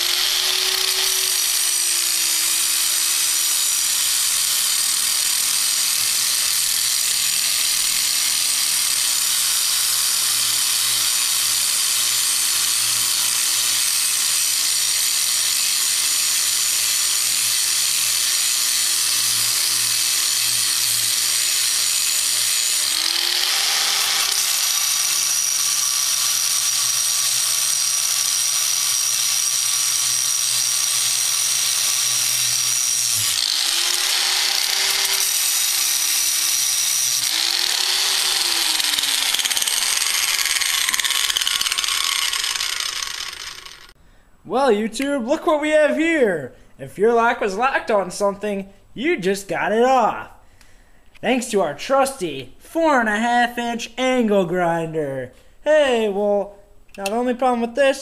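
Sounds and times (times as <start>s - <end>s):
angle grinder cutting metal: 0.0s - 44.0s.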